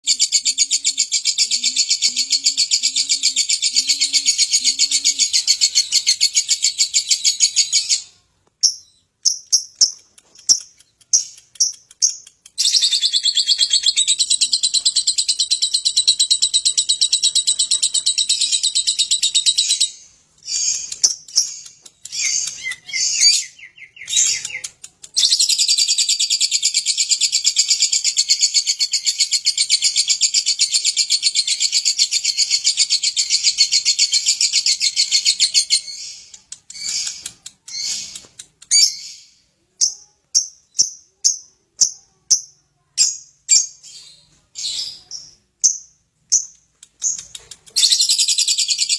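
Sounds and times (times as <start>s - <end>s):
lovebird chattering trill: 0.1s - 8.0s.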